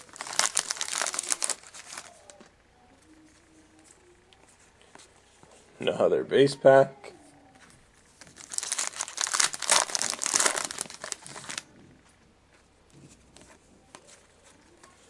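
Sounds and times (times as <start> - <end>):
foil wrapper crinkling and tearing: 0.0 - 2.4, 8.2 - 11.7
cards ticking: 0.0 - 2.5, 8.2 - 11.6.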